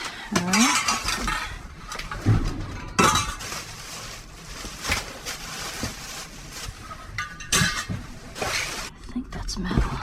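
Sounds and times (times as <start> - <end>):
objects knocking and shifting: 0.0 - 8.9.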